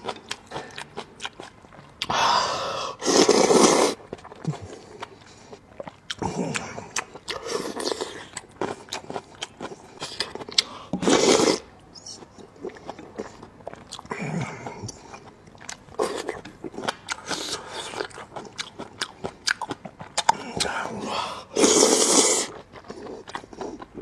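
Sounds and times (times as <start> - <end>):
chewing with wet mouth clicks: 0.0 - 2.2, 4.0 - 10.8, 11.8 - 20.9, 22.5 - 24.0.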